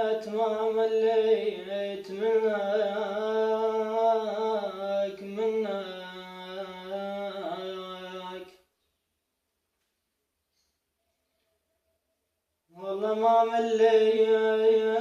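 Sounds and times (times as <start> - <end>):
person singing unaccompanied: 0.0 - 8.6, 12.7 - 15.0.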